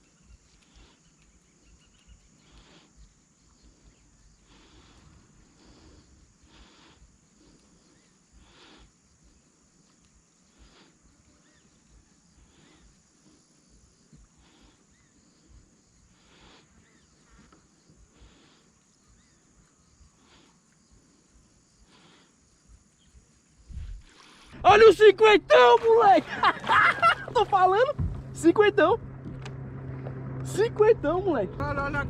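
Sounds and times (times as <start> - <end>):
faint bird chirps: 0.0 - 24.1.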